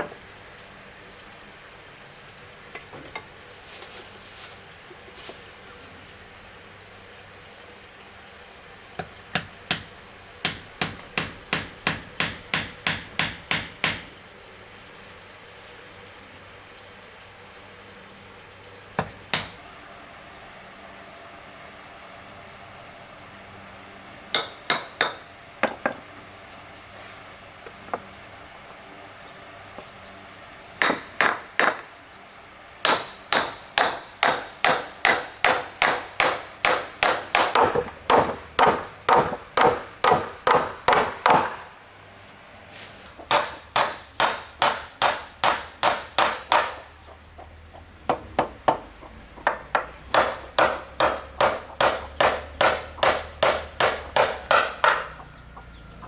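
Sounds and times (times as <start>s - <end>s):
hand tool striking wood: 9.0s - 14.2s, 19.0s - 19.6s, 24.3s - 26.0s, 30.8s - 31.9s, 32.8s - 41.7s, 43.2s - 46.9s, 48.1s - 55.2s.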